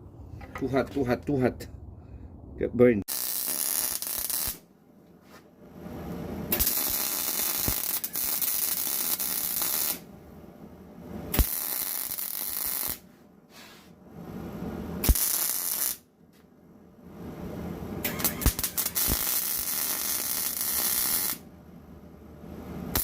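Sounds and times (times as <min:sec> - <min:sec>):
electric arc welding: 0:03.1 - 0:04.6, 0:06.5 - 0:10.1, 0:11.3 - 0:13.0, 0:15.0 - 0:16.0, 0:18.0 - 0:21.4.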